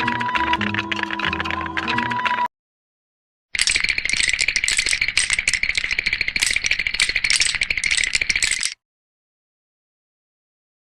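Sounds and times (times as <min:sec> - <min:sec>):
cartoon teeth chattering: 0:03.6 - 0:08.8.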